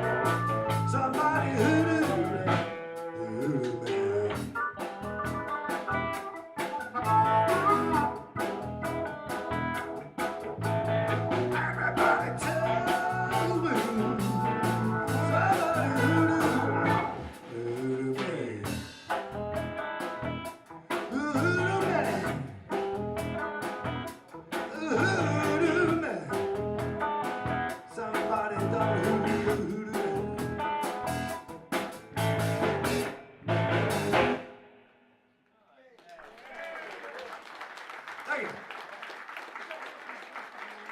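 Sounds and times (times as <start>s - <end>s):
steady drum beat: 0.0s - 2.7s, 4.4s - 34.4s
lead guitar line with bent notes: 0.0s - 17.4s, 19.1s - 34.6s
blues band playing: 0.0s - 34.7s.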